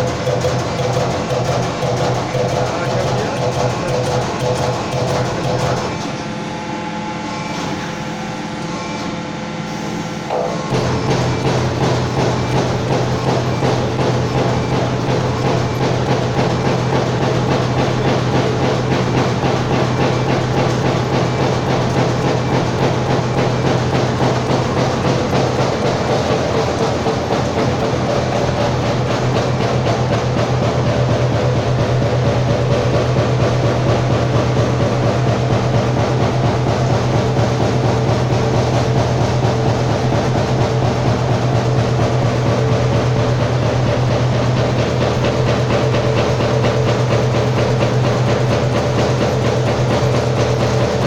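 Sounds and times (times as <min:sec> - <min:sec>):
punch press punching strokes: 0:09.8 - 0:51.0
machine drive hum: 0:10.3 - 0:51.0.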